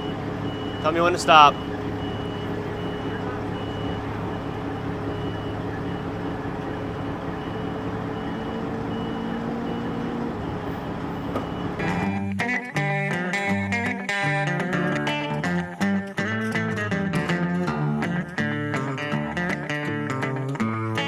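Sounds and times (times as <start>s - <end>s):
backup alarm beeping: 0.0s - 12.0s
heavy vehicle engine running: 0.0s - 12.1s.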